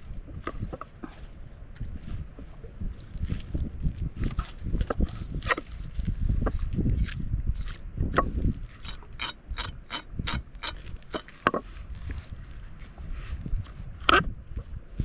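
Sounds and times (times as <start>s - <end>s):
ratchet mechanism clicking: 8.8s - 11.2s.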